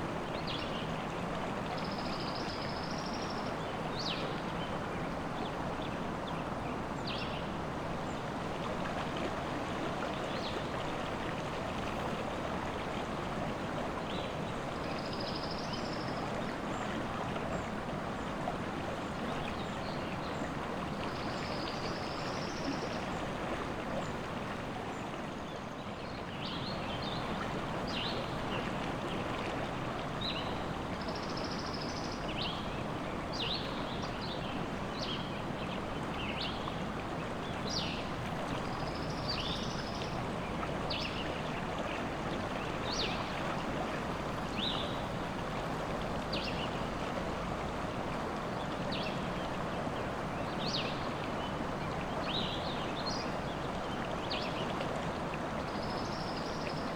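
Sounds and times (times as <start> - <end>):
river water rushing: 31.8 - 56.9.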